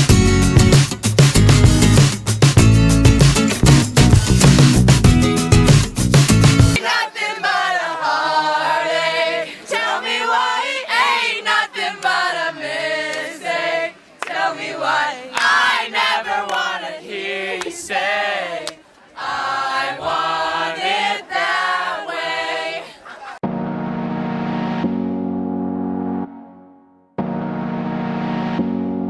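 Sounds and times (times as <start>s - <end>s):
group of voices singing: 3.7s - 4.9s, 6.7s - 23.4s.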